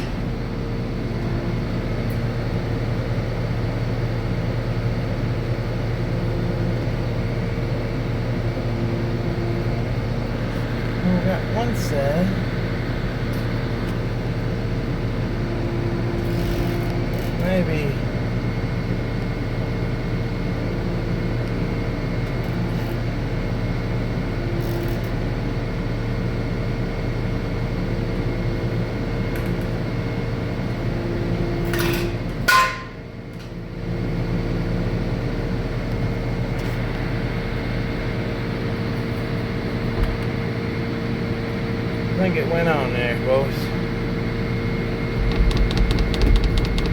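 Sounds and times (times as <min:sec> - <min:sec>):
diesel engine running: 0:41.4 - 0:46.9.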